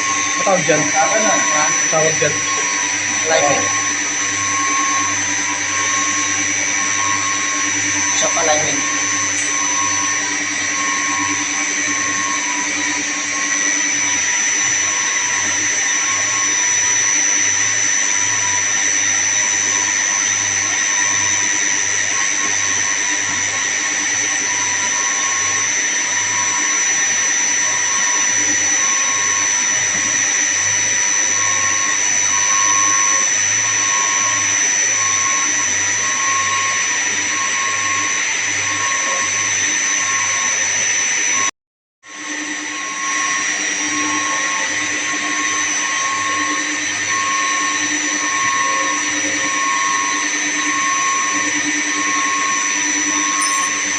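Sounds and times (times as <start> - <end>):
high whine: 0.0 - 16.6, 53.1 - 53.9
chiller machinery running: 0.0 - 41.4, 43.8 - 53.9.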